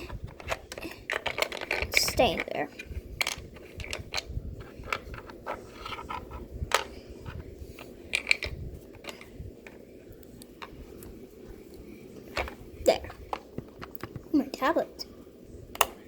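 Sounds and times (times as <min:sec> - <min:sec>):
plastic toys clicking and knocking: 0:00.0 - 0:02.6, 0:03.2 - 0:09.8.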